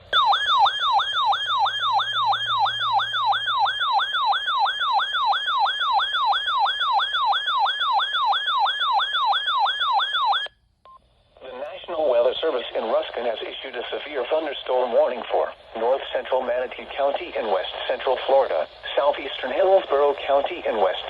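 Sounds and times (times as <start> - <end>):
electronic siren alarm: 0.1 - 10.5.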